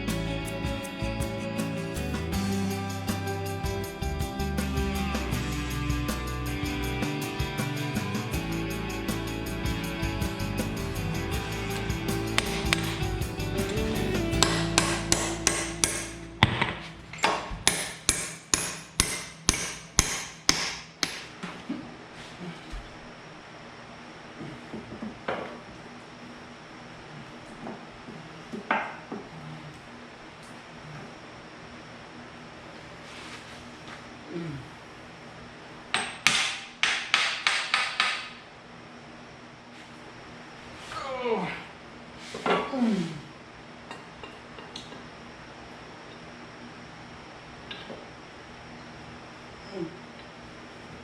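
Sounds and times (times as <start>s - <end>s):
steady hum: 0.0s - 51.0s
hammer blows on metal: 10.5s - 16.9s
hammer striking metal: 11.6s - 21.3s, 35.9s - 38.4s.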